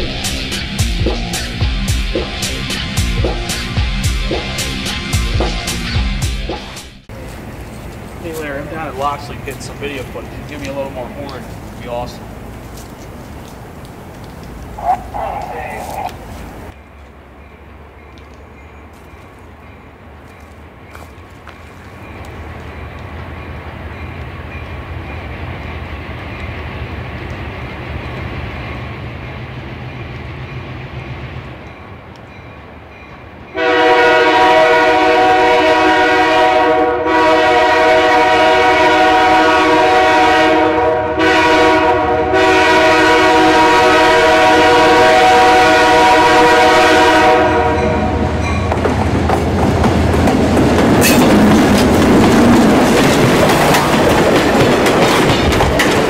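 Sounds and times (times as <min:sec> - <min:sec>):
diesel locomotive engine rumble: 0:00.0 - 0:56.0
locomotive air horn: 0:33.6 - 0:48.2
train wheels clattering over rails: 0:48.5 - 0:56.0.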